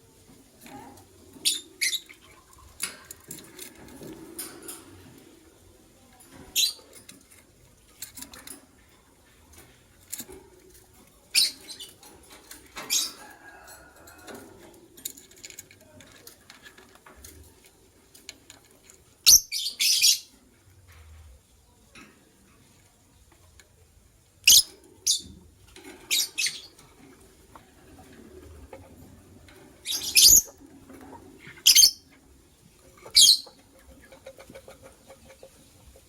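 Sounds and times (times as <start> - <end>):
lovebirds chirping: 1.4 - 2.7, 24.4 - 25.4, 29.8 - 30.6, 31.4 - 33.6.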